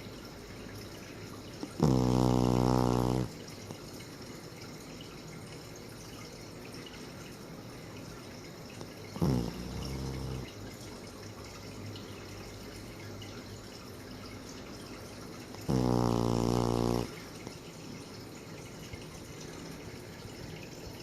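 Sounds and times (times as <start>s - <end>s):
pet snoring: 1.6s - 3.4s, 8.8s - 10.6s, 15.5s - 17.4s
breathing hiss: 9.2s - 10.5s, 15.6s - 17.2s.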